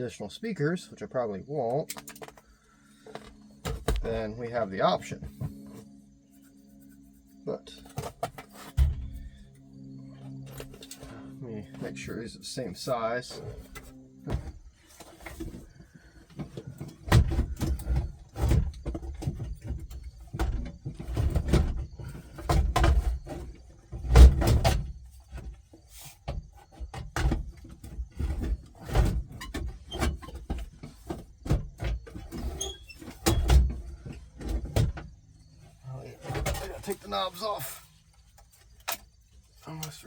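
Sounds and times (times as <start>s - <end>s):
hands handling car radio parts: 1.7s - 4.3s.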